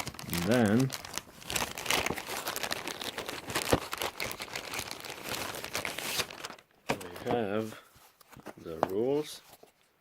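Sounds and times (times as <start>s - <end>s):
plastic packaging crinkling: 0.0s - 7.5s.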